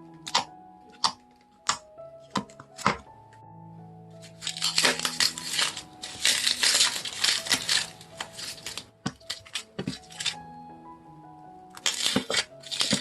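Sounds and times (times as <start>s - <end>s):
slime crackling and popping: 4.3s - 10.4s, 11.7s - 13.0s.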